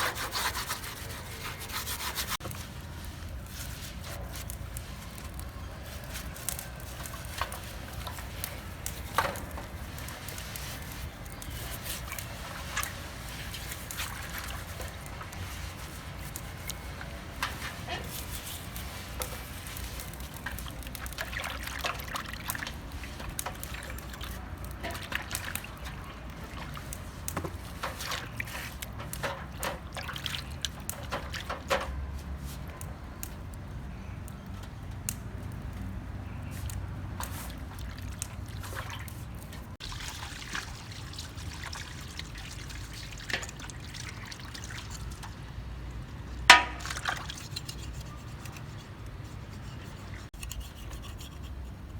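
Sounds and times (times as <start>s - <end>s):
small clicks and scrapes: 0.0s - 26.2s, 46.6s - 51.9s
water trickling and pouring: 0.0s - 31.7s, 37.2s - 47.8s.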